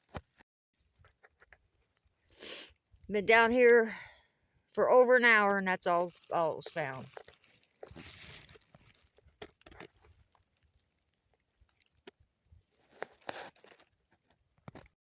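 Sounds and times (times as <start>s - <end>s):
footsteps through dry leaves: 5.9s - 9.2s.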